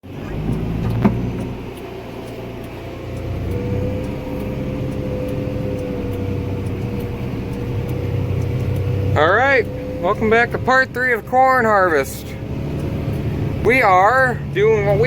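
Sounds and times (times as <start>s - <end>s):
farm machinery engine running: 0.0s - 15.0s
click: 0.3s - 8.9s.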